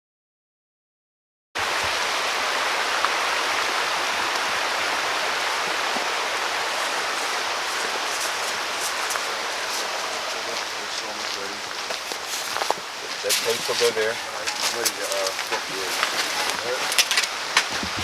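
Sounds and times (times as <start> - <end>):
meat sizzling on a grill: 6.7 - 17.9.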